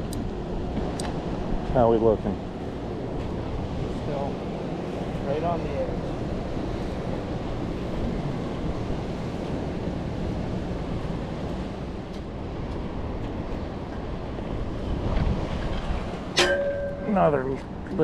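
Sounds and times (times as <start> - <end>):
wind on microphone: 2.8 - 18.0
river water rushing: 15.9 - 17.8.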